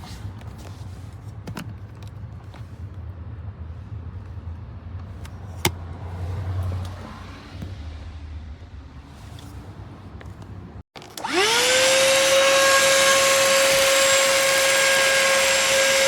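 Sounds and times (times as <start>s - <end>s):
handheld vacuum running: 11.0s - 16.0s.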